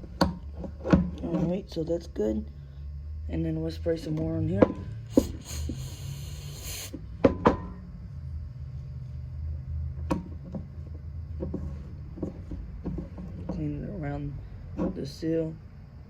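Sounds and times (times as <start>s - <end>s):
aerosol can spraying: 5.1s - 7.0s.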